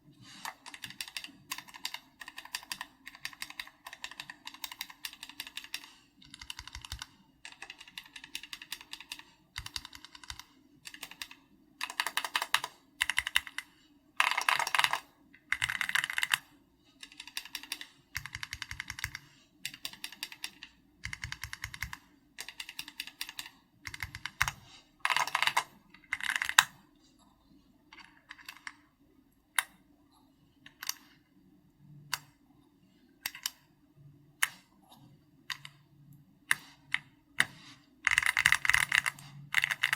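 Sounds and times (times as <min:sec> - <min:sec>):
mechanical keyboard typing: 0:00.4 - 0:26.8, 0:28.0 - 0:28.8, 0:30.7 - 0:31.1, 0:35.5 - 0:35.8, 0:36.5 - 0:39.9.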